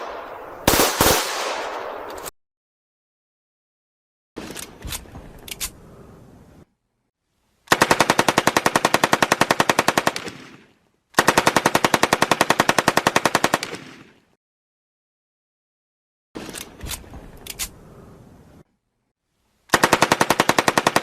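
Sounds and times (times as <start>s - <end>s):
machine gun firing bursts: 0.0s - 1.8s, 7.7s - 10.6s, 11.2s - 14.0s, 19.7s - 21.0s.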